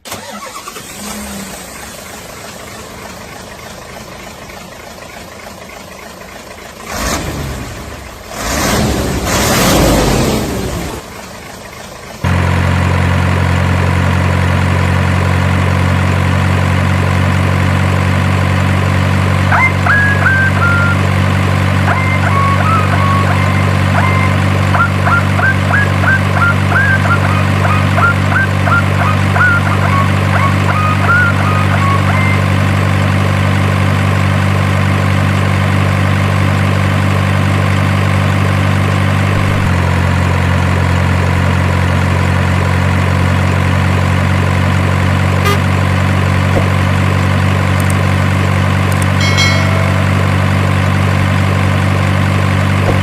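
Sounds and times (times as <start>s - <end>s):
engine idle hum: 0.0s - 53.0s
short high chirps: 19.6s - 21.1s, 49.2s - 51.0s.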